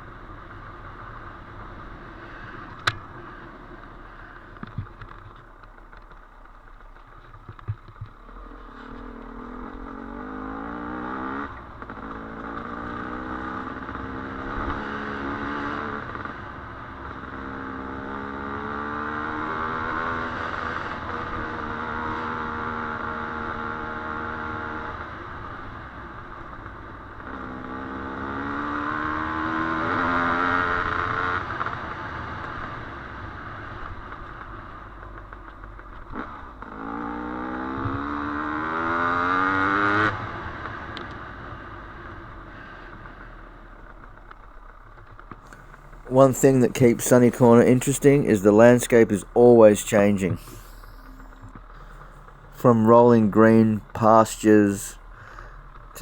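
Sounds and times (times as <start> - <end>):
dirt bike engine revving: 8.6 - 16.0, 45.5 - 56.0.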